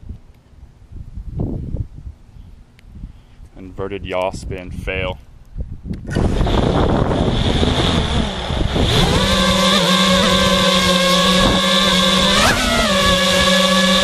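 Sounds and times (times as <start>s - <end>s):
wind noise: 0.0s - 14.0s
drone motors whining: 6.1s - 14.0s.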